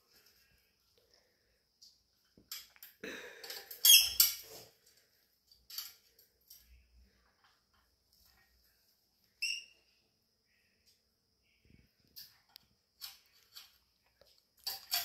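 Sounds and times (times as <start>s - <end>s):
parrot chirps: 9.4s - 9.8s
parrot squeaking: 9.4s - 9.8s.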